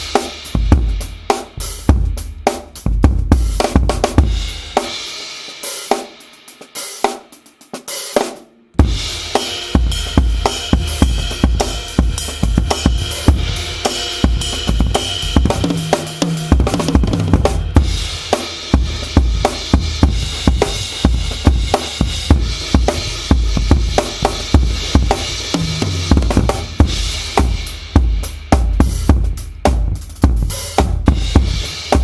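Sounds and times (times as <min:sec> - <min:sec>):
drum kit groove: 0:00.0 - 0:32.0
cymbal crash: 0:08.8 - 0:27.9.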